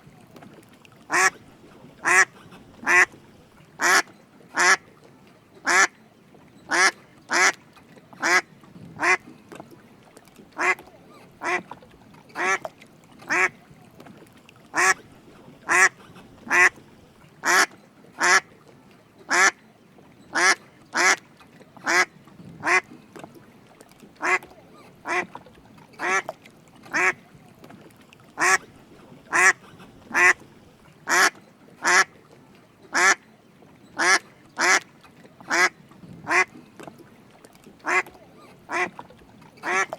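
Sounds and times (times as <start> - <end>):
duck quacking: 1.1 - 1.4, 2.0 - 3.2, 3.8 - 4.8, 6.7 - 7.5, 10.6 - 10.8, 11.4 - 11.6, 12.4 - 12.6, 13.3 - 13.5, 14.8 - 15.0, 15.6 - 16.8, 17.4 - 18.4, 21.8 - 22.9, 24.2 - 24.4, 25.0 - 25.3, 26.0 - 26.3, 26.9 - 27.2, 28.4 - 28.7, 29.3 - 30.5, 31.1 - 32.1, 32.9 - 33.2, 34.0 - 34.8, 35.5 - 35.7, 36.3 - 36.5, 37.8 - 38.1, 38.7 - 39.0, 39.6 - 39.9.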